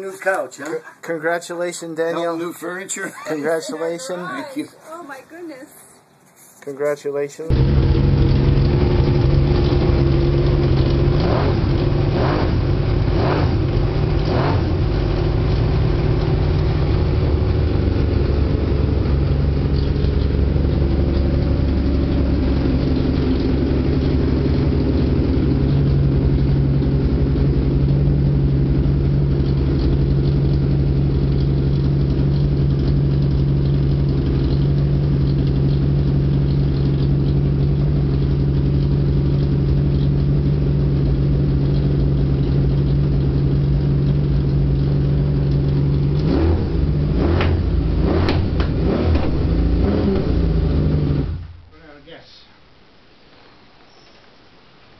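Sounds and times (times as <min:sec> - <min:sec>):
motorcycle engine idling: 0:11.7 - 0:48.7.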